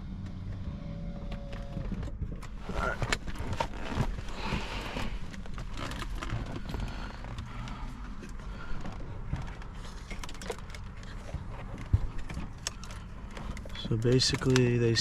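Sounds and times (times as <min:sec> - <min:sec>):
clicks and knocks of handled parts: 0:04.9 - 0:15.0.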